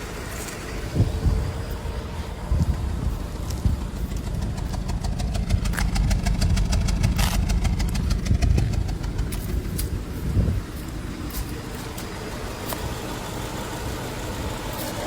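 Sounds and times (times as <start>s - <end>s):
car engine rumbling: 0.0s - 15.0s
sharp ticks and rattles: 0.2s - 15.0s.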